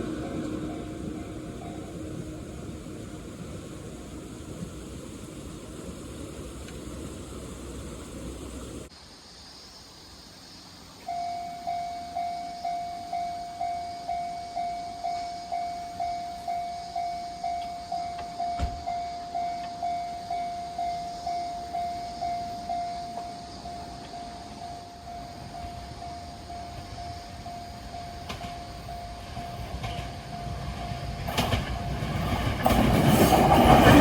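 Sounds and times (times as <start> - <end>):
level-crossing alarm ringing: 11.1 - 34.0.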